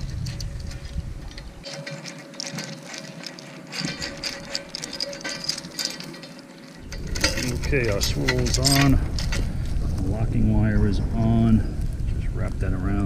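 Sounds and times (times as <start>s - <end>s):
metal chain clinking: 0.0s - 9.8s.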